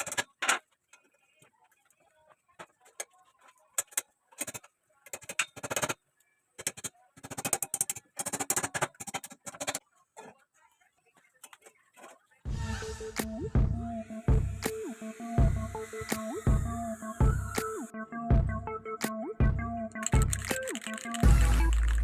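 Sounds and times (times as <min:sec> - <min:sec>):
objects being handled: 0:20.0 - 0:22.0.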